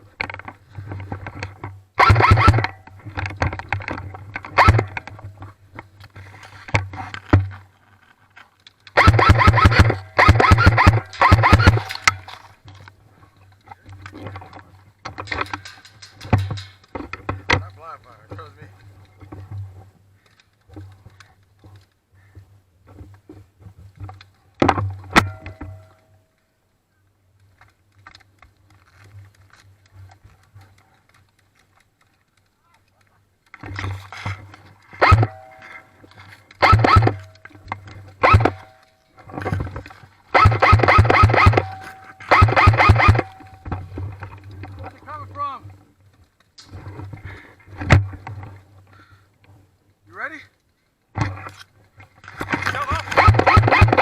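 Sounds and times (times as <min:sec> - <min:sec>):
rustling: 0:00.0 - 0:54.0
sharp clicks and knocks: 0:00.2 - 0:07.6, 0:08.6 - 0:13.0, 0:27.4 - 0:45.0, 0:52.2 - 0:54.0
airsoft guns firing bursts: 0:02.0 - 0:02.8, 0:09.0 - 0:12.1, 0:35.0 - 0:35.4, 0:36.6 - 0:37.2, 0:38.2 - 0:38.6, 0:40.3 - 0:43.5, 0:52.8 - 0:54.0.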